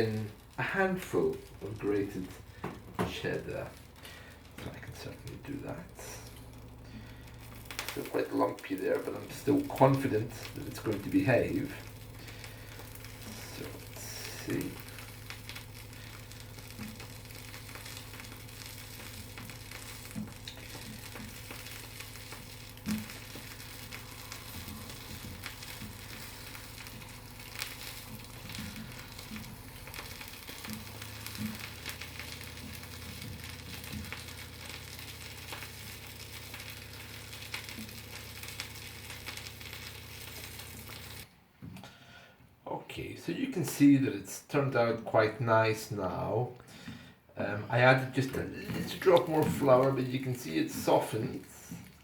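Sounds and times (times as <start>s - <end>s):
sauce sizzling and bubbling in a pan: 0.0s - 41.3s, 47.7s - 52.0s
steady low hum: 0.0s - 51.7s
utensil stirring knocks: 9.3s - 36.9s.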